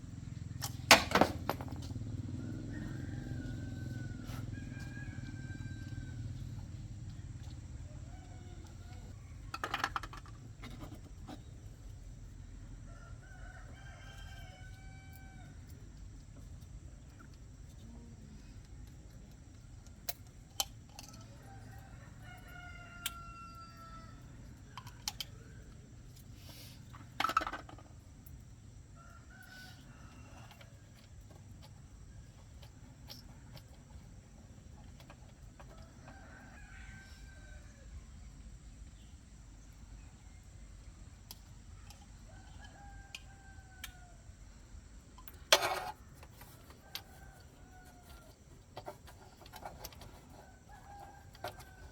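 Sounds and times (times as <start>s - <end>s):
faint roosters crowing: 1.3s - 16.2s, 20.9s - 51.9s.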